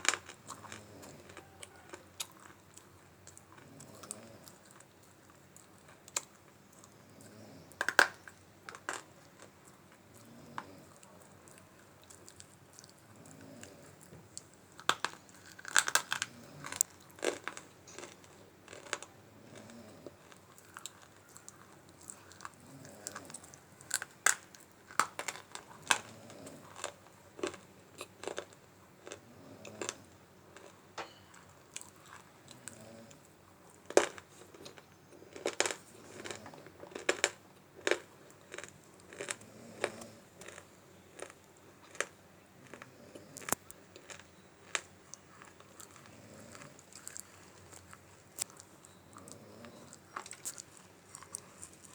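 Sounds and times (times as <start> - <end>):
quiet chewing: 0.0 - 51.9
clay crunching when bitten: 14.8 - 19.9.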